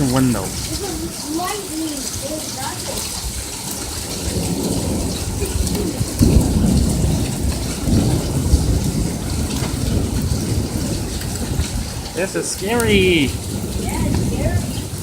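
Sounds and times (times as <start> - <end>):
heavy rain pouring: 0.0 - 15.0
thunder rumbling: 0.0 - 15.0.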